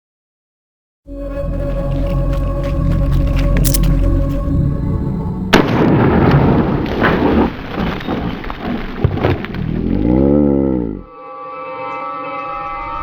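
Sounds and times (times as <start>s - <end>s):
loud boom with rumbling tail: 5.5s - 10.0s
sharp cracks: 5.6s - 10.2s.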